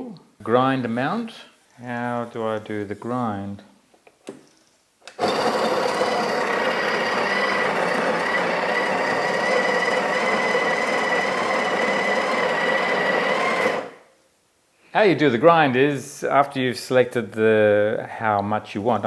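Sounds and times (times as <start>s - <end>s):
coffee grinder grinding: 5.1s - 14.0s.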